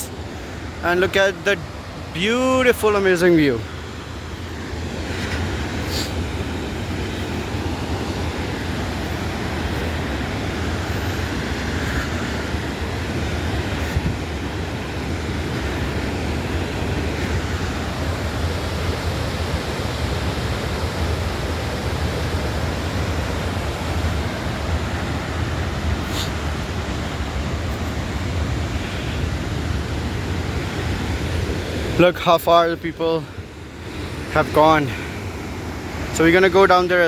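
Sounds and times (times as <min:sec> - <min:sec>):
waterfall rushing: 0:00.0 - 0:37.0.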